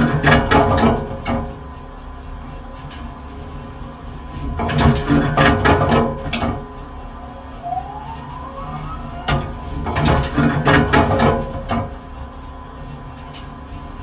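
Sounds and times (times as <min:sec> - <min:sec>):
conveyor machine hum: 0:00.0 - 0:14.0
loud clattering knocks: 0:04.5 - 0:06.6, 0:09.3 - 0:11.9.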